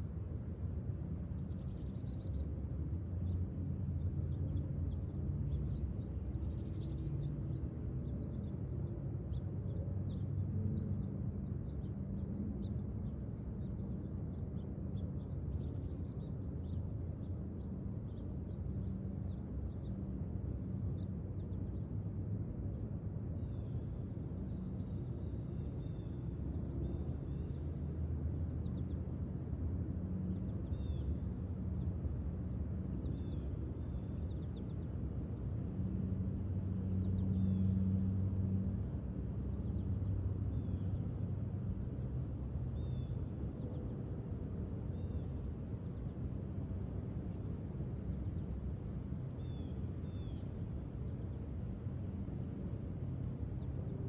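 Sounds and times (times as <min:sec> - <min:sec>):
steady low rumble: 0:00.0 - 0:54.0
small birds chirping: 0:44.8 - 0:51.4.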